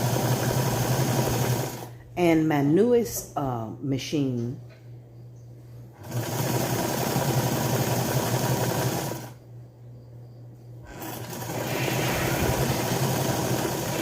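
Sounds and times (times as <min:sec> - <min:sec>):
sewing machine stitching: 0:00.0 - 0:01.9, 0:06.0 - 0:09.4, 0:10.9 - 0:14.0.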